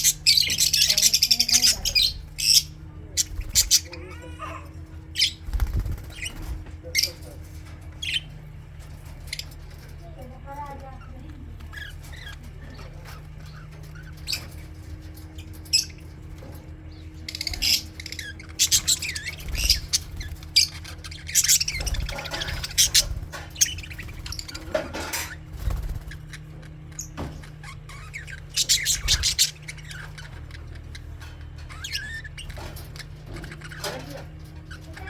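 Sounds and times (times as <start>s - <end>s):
budgies chirping and warbling: 0.0s - 35.0s
steady low hum: 0.0s - 35.0s.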